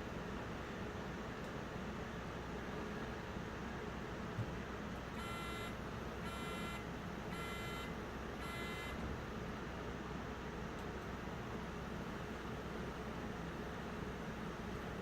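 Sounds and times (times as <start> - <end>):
short electronic beeps: 5.2 - 5.7, 6.3 - 9.0.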